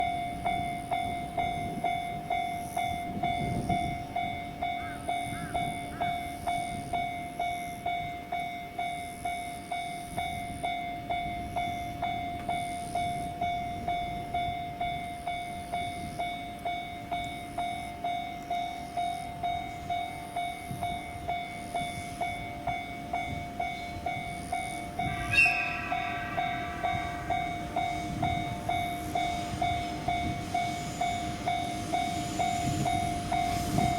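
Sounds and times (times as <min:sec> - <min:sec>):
level crossing warning bell: 0:00.0 - 0:33.9
train horn: 0:24.6 - 0:32.8.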